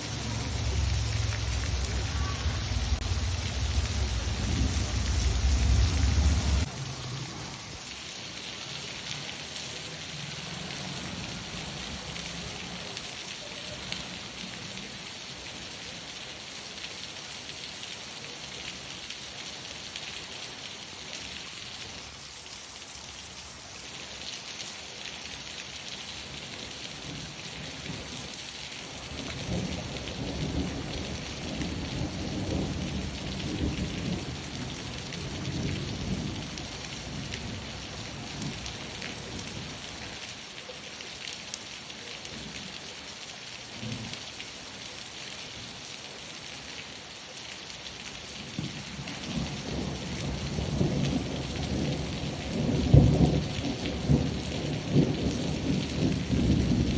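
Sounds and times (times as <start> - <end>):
low rumble of thunder: 0.0 - 6.7, 29.1 - 39.4, 48.6 - 56.9
steady rain falling: 0.0 - 56.9.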